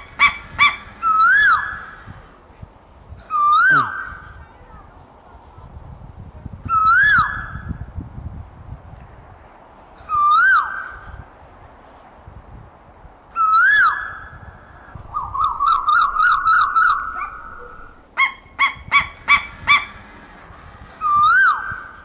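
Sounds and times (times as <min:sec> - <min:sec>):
bird calling: 0:00.0 - 0:02.4, 0:03.2 - 0:04.4, 0:10.0 - 0:11.2, 0:13.3 - 0:22.0.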